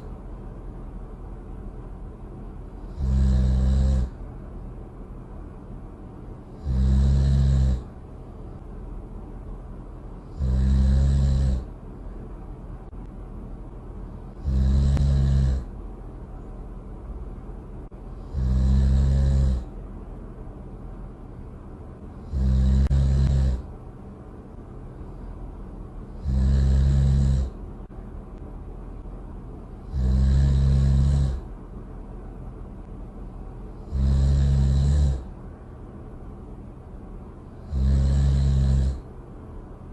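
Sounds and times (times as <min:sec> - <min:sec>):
low background noise: 0:00.0 - 0:39.9
loud snoring: 0:02.8 - 0:04.2, 0:06.5 - 0:07.9, 0:10.2 - 0:11.7, 0:14.3 - 0:15.7, 0:18.2 - 0:19.7, 0:22.2 - 0:23.7, 0:26.1 - 0:27.6, 0:29.8 - 0:31.5, 0:33.8 - 0:35.3, 0:37.6 - 0:39.1.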